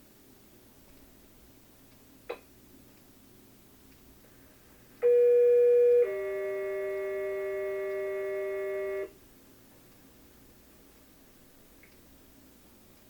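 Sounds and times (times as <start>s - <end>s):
two-tone pager alert: 5.0s - 9.1s.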